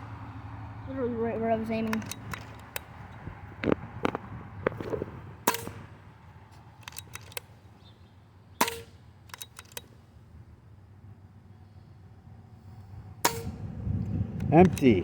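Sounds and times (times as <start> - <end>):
air rifle shots: 3.6 - 6.0, 8.6 - 9.9, 13.2 - 13.8.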